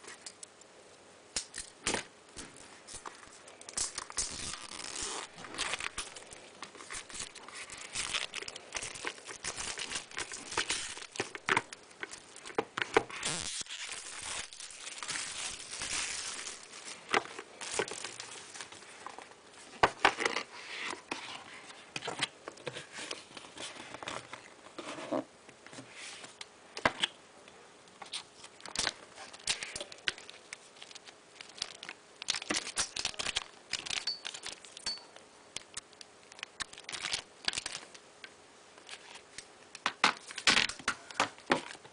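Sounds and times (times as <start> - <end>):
plastic and cardboard crinkling: 2.4 - 26.4, 28.0 - 34.9, 35.6 - 38.0.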